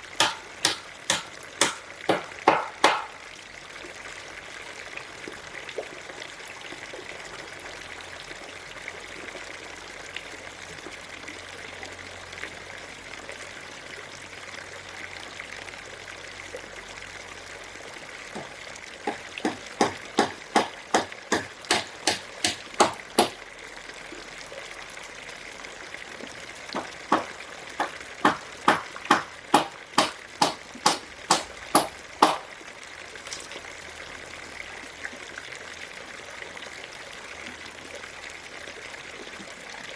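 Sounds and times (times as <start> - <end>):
running water trickling: 0.0 - 39.9
sharp knocks: 0.2 - 3.2, 18.4 - 23.4, 26.8 - 32.5.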